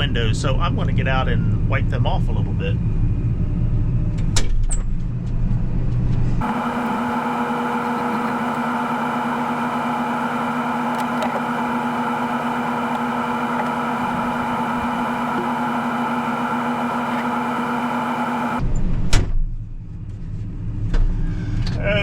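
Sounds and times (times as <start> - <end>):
combine harvester running: 5.1 - 18.7.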